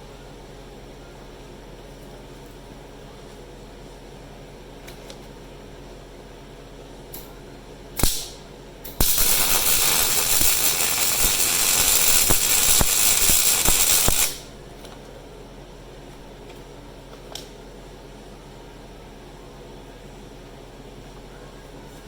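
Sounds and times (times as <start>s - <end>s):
short click and hiss: 8.0s - 9.3s
air tool hissing and rattling: 9.0s - 14.5s.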